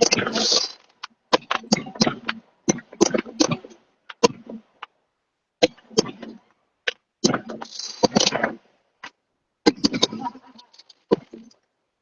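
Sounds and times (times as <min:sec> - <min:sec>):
sharp knocks and clicks: 0:00.0 - 0:05.0.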